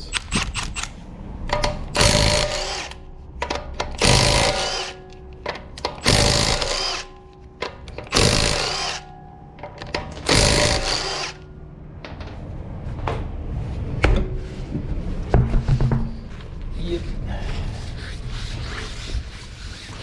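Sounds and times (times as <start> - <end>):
impact wrench rattling: 0.0 - 5.2, 5.8 - 11.4
sharp clicks and knocks: 0.0 - 9.0, 9.6 - 12.4.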